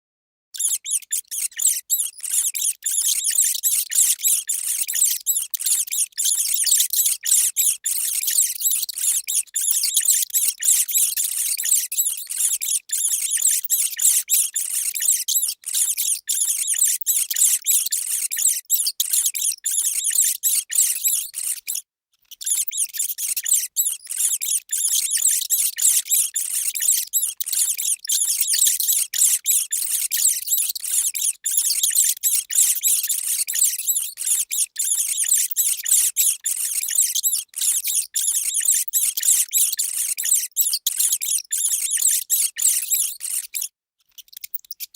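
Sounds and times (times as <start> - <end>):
rats squealing and squeaking: 0.6 - 44.9.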